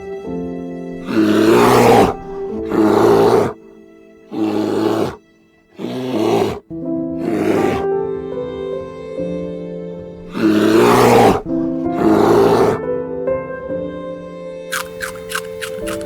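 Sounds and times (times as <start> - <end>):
background music: 0.0 - 16.0
large animal calling: 1.0 - 3.6, 4.3 - 5.2, 5.8 - 6.6, 7.2 - 7.9, 10.2 - 12.8.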